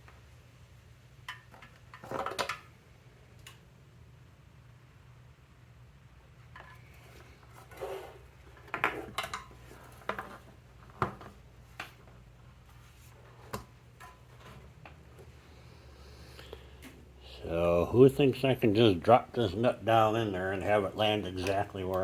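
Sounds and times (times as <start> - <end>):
steady low hum: 11.5 - 22.0.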